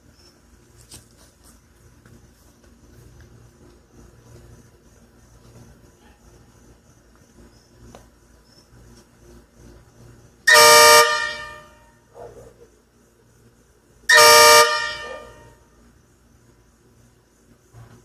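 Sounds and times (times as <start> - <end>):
truck air horn blasts: 10.5 - 12.0, 14.1 - 15.6.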